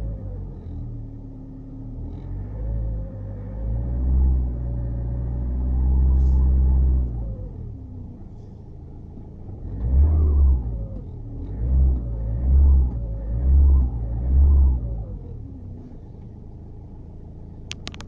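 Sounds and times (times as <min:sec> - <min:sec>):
diesel engine revving: 0:01.7 - 0:07.9, 0:09.5 - 0:16.1.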